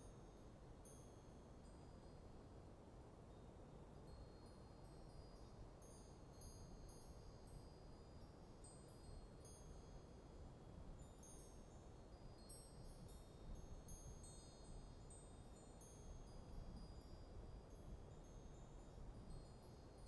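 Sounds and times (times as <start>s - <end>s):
wind chimes tinkling: 11.0s - 19.9s.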